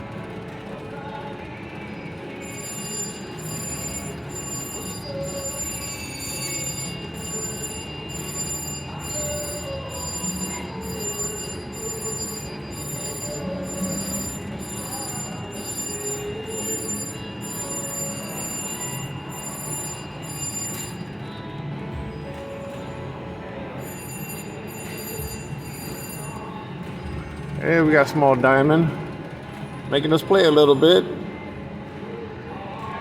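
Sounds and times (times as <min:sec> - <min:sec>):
casino background din: 0:00.0 - 0:33.0
pulsing high tones: 0:02.4 - 0:21.4, 0:23.8 - 0:26.8
slot machine jingles and chimes: 0:02.4 - 0:21.4, 0:23.7 - 0:27.9.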